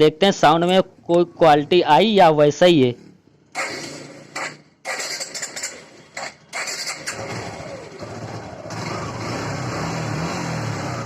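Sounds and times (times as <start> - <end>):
motorcycle engine cranking: 3.5 - 9.3.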